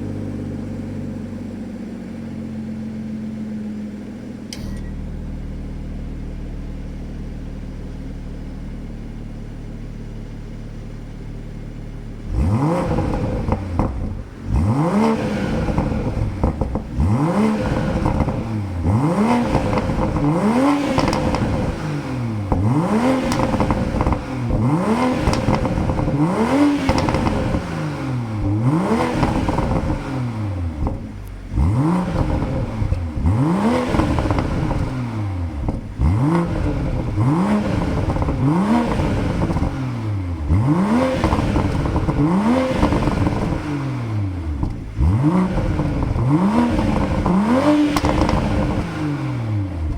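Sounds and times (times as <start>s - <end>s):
car engine idling and revving: 0.0s - 49.9s
exhaust pops and crackles: 12.8s - 14.6s, 15.4s - 27.8s, 28.4s - 30.1s, 30.7s - 39.8s, 41.2s - 43.7s, 44.6s - 49.0s.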